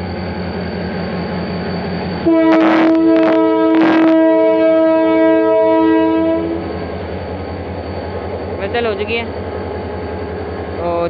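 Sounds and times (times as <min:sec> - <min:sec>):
locomotive air horn: 0:02.2 - 0:06.7.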